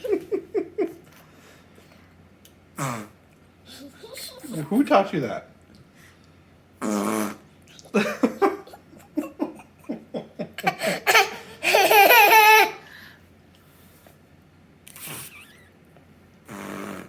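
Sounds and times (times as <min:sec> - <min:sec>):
young child laughing: 0:00.0 - 0:01.0, 0:07.8 - 0:12.8.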